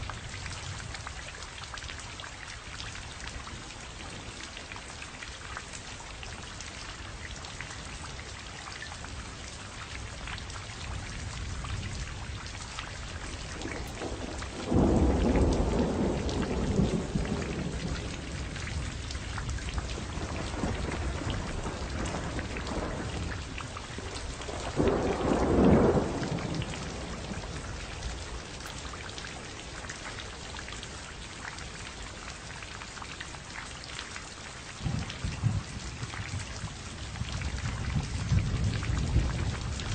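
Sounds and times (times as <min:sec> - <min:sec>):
heavy rain: 0:00.0 - 0:39.9
thunder rumbling: 0:10.8 - 0:31.9, 0:34.8 - 0:39.9.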